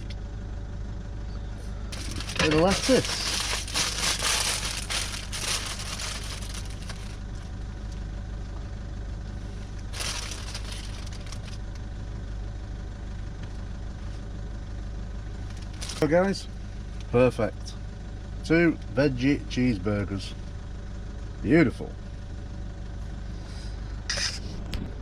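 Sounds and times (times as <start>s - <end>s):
low hum: 0.0s - 25.0s
lettuce leaves crunching: 2.0s - 7.4s, 9.8s - 11.6s, 15.6s - 16.0s.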